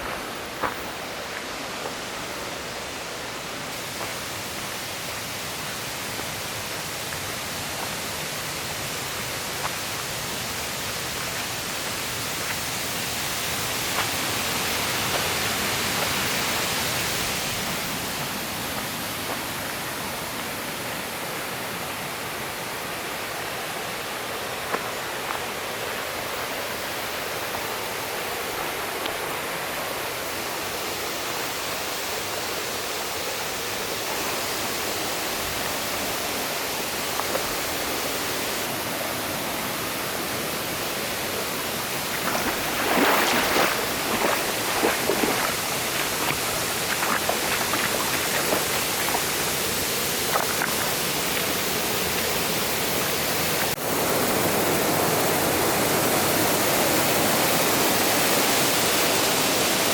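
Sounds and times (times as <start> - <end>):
mountain stream rushing: 0.0 - 59.9.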